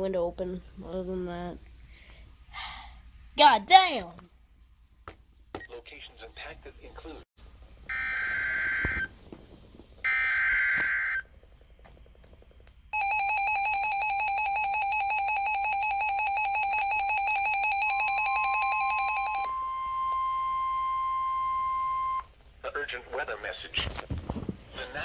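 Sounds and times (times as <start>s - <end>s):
single steady tone: 19.4s - 22.3s.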